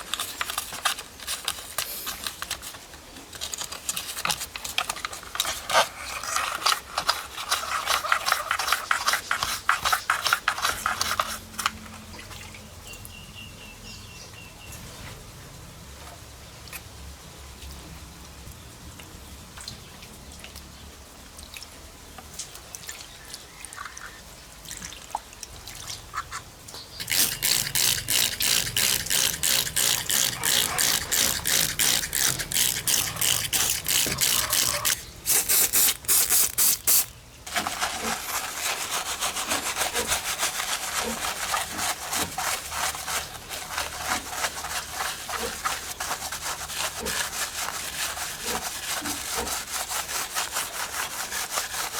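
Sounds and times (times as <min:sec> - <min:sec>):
brush scrubbing toy car: 0:03.6 - 0:11.8, 0:27.0 - 0:51.9
water dripping: 0:19.0 - 0:37.2.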